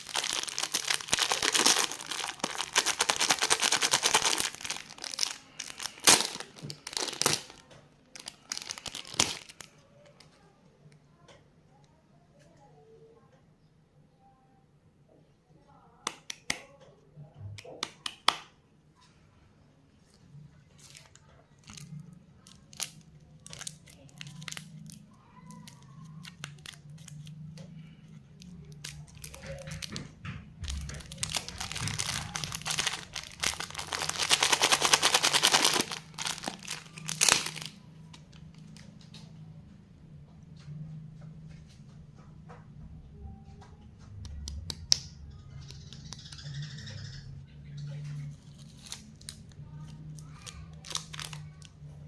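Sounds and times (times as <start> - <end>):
plastic wrappers crinkling: 0.0 - 10.2, 20.7 - 39.3, 48.4 - 51.8
faint low hum: 0.0 - 16.1, 18.6 - 52.0.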